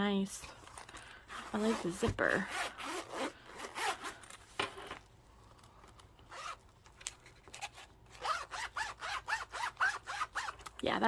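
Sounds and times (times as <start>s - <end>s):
zipper rasping: 1.3s - 4.2s, 6.3s - 6.6s, 7.6s - 10.6s.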